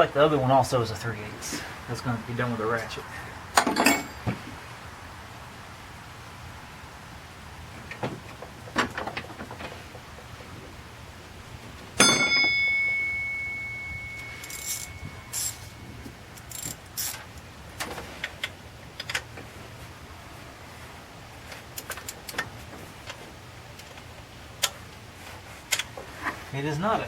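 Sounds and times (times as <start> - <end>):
metal tools clinking: 3.6 - 4.2, 12.0 - 17.2
sharp metallic clank ringing: 3.6 - 4.2, 12.0 - 16.0.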